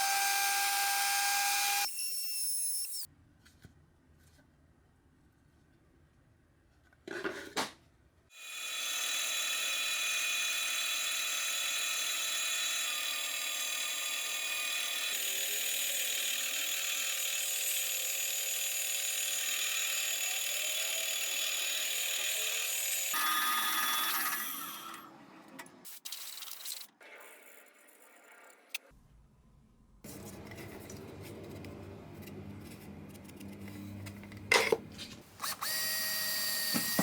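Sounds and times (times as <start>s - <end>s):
workshop tool motor whining: 0.0s - 3.1s, 8.4s - 25.1s, 32.6s - 37.0s.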